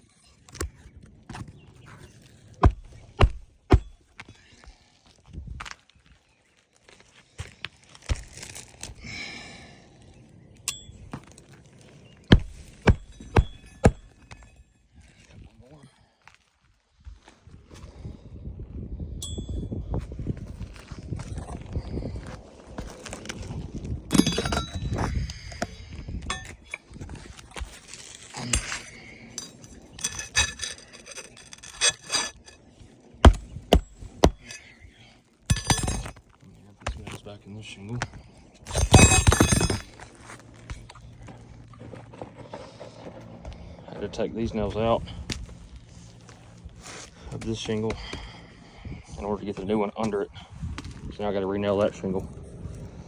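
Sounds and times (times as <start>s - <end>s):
ringing metallic clinks: 19.2s - 19.7s, 24.1s - 25.0s, 35.5s - 36.1s, 38.8s - 39.9s
rasping scrape: 26.3s - 34.8s, 35.5s - 36.2s.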